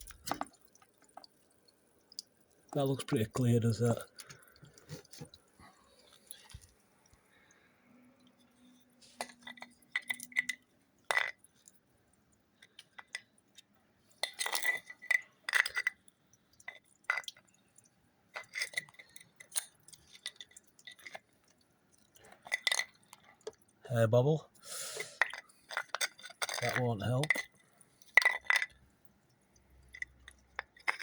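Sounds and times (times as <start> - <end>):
dripping water: 0.0 - 8.0.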